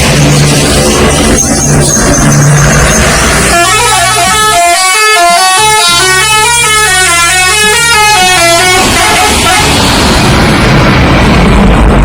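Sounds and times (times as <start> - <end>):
street and engine noise: 0.0 - 12.0
bus horn playing a tune: 3.3 - 10.0.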